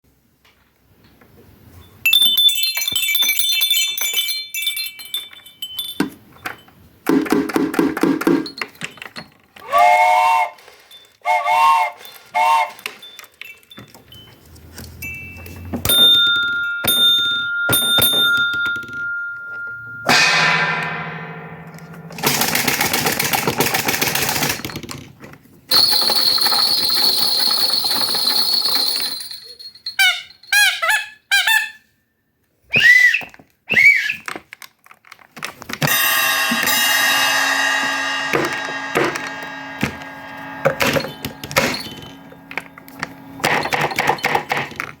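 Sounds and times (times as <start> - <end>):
high whistle: 9.6 - 13.0, 32.7 - 34.2
chord-like horn tone: 35.9 - 43.5
steady high tone: 35.9 - 43.8.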